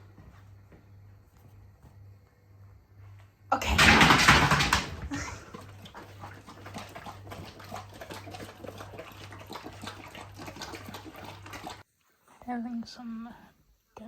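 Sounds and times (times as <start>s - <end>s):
dog clicking and scratching: 3.6s - 11.8s.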